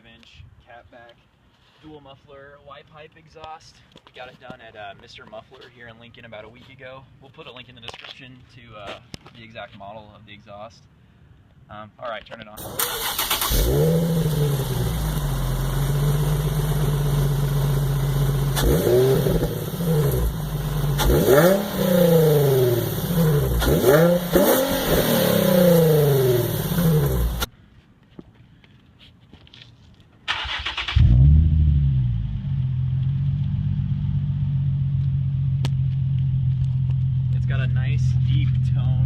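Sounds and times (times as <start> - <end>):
car engine starting and idling: 12.6 - 27.5, 30.3 - 39.0
engine revving: 12.6 - 27.5, 30.4 - 37.6.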